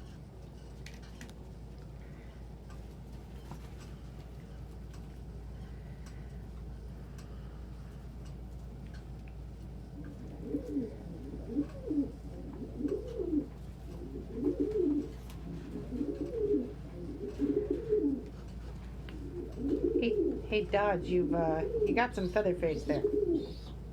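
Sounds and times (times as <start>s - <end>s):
pigeon cooing: 9.8s - 23.9s.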